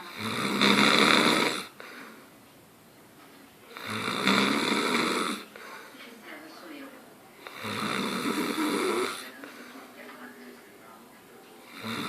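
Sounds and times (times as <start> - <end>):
loud snoring: 0.0 - 1.7, 3.7 - 5.5, 7.4 - 9.3, 11.6 - 12.0.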